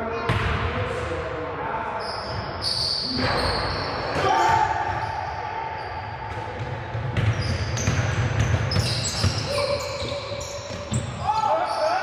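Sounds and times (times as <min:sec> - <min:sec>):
sneakers squeaking: 0:02.0 - 0:12.0
basketball bouncing on court: 0:06.3 - 0:11.4.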